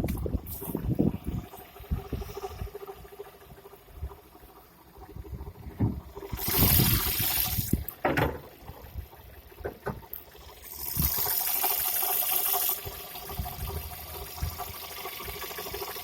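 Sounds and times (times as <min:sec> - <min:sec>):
water pump rushing hiss: 0:05.2 - 0:09.5, 0:10.1 - 0:16.0.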